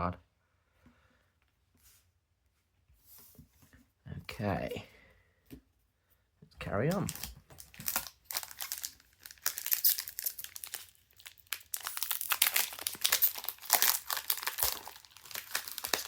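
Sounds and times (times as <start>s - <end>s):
card pack wrapper crinkling and tearing: 6.9s - 16.0s.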